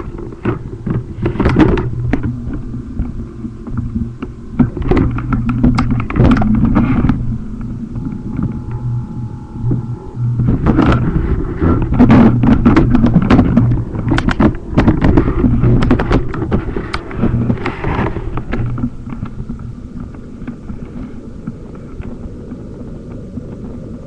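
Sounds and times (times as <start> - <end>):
steady hum: 0.0 - 24.0.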